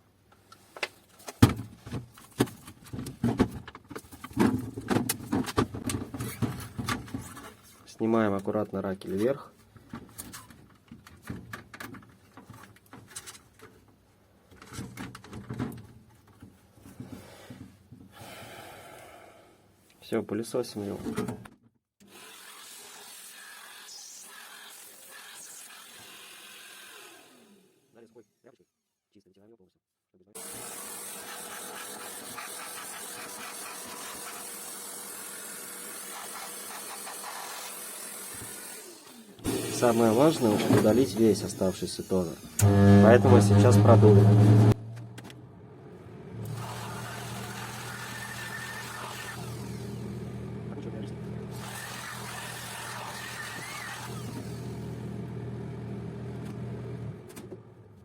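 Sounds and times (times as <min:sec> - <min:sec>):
vacuum cleaner running: 0:30.4 - 0:41.6, 0:42.4 - 0:45.0, 0:45.8 - 0:57.2.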